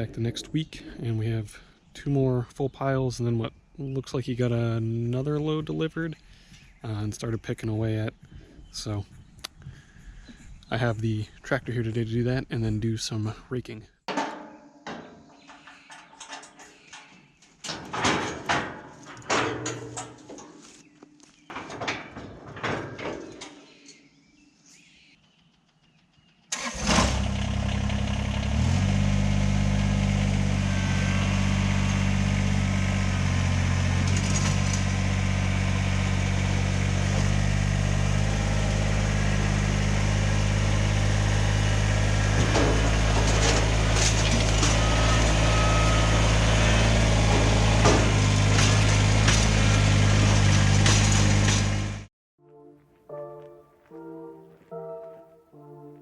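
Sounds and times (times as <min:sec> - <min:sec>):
tractor diesel engine starting: 0:25.8 - 0:52.1.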